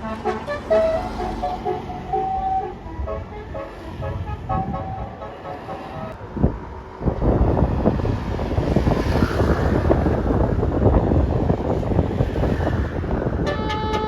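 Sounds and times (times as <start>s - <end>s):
multi-tone bus horn tune: 0.0s - 6.2s, 13.2s - 14.0s
bus engine rumbling: 0.0s - 14.0s
road noise: 0.0s - 14.0s
wind buffeting microphone: 0.0s - 14.0s.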